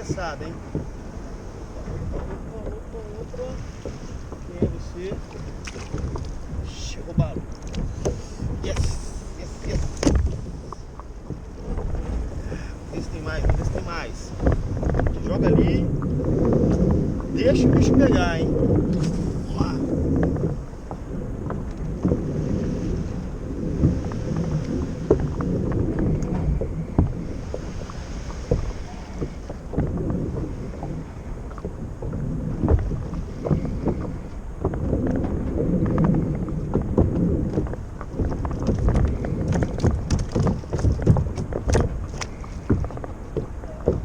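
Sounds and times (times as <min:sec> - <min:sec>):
water moving around kayak: 0:00.0 - 0:44.0
wind buffeting microphone: 0:00.0 - 0:44.0
small knocks and splashes: 0:01.8 - 0:16.9, 0:17.7 - 0:44.0
small knocks and clicks: 0:07.2 - 0:09.1, 0:31.5 - 0:44.0.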